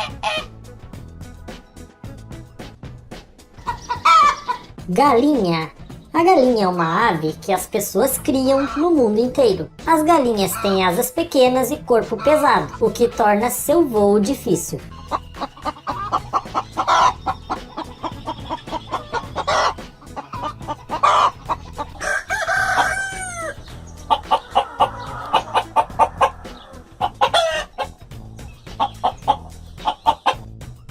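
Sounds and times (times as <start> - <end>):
chickens clucking: 0.0 - 0.6, 3.2 - 30.6
rooster crowing: 22.0 - 27.7.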